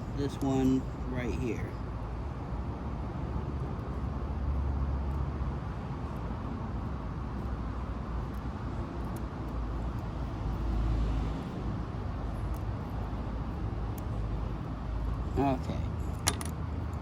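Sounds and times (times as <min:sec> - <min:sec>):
road traffic rumble: 0:00.0 - 0:17.0
light clicks of small parts: 0:08.2 - 0:10.3, 0:12.2 - 0:15.2.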